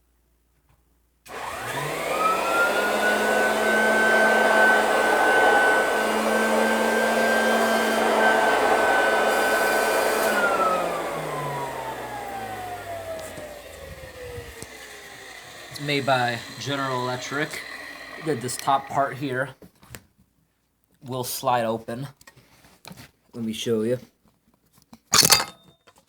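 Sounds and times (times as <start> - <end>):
vacuum cleaner motor whining: 1.3 - 19.2.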